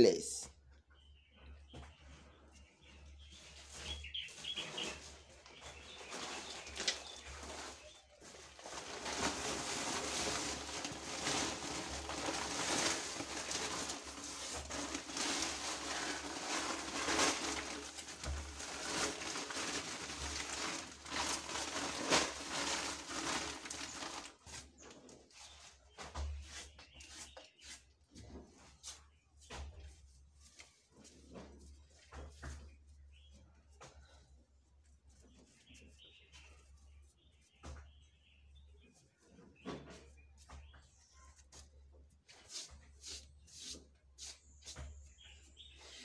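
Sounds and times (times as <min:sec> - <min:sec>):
scrapes and knocks: 0:03.3 - 0:32.9
soil pouring gritty rustle: 0:06.0 - 0:24.5.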